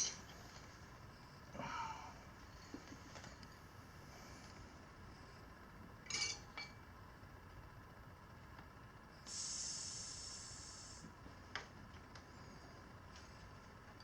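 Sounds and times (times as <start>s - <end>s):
metal tire irons clinking: 6.1s - 6.7s
air hissing: 9.3s - 11.0s.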